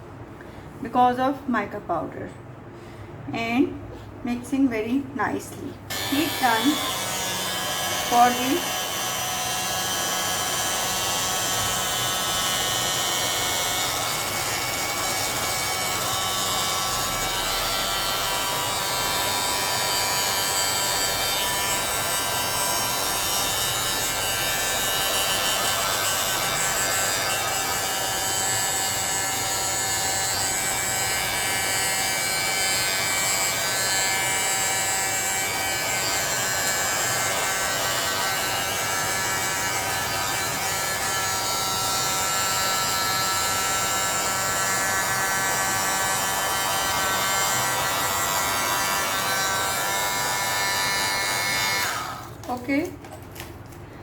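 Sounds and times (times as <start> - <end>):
heat gun motor hum: 5.9 - 52.9.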